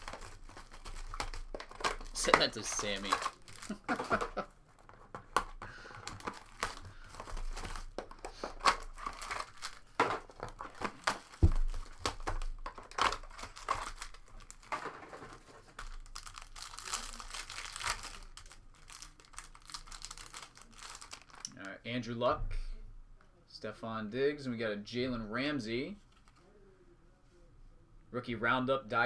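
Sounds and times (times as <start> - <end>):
card pack wrappers crinkling and tearing: 0.0 - 21.6.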